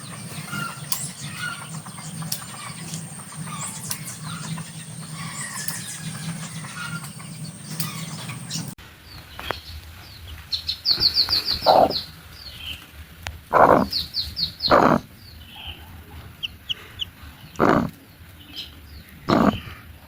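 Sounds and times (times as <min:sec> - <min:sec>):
high-pitched whine: 0:00.0 - 0:08.8
low hum: 0:00.0 - 0:08.8
small birds chirping: 0:00.0 - 0:08.8, 0:10.6 - 0:12.8, 0:13.6 - 0:19.8.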